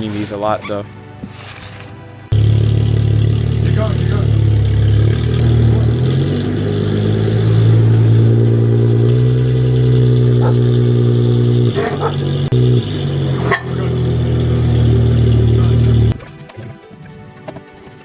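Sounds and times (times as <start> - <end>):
car engine droning: 2.3 - 16.2.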